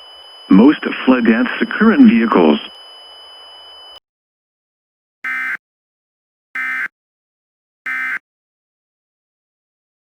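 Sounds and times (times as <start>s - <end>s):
buzzy digital squawks: 6.6s - 6.9s.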